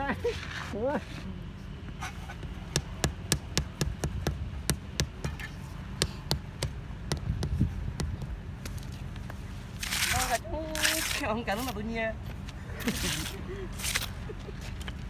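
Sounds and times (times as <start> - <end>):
hand tool tapping on paving: 2.4 - 11.8, 12.8 - 15.0.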